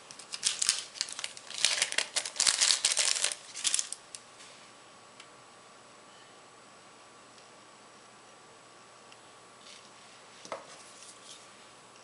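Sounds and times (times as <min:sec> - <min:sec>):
packaging crinkling: 0:00.1 - 0:04.1.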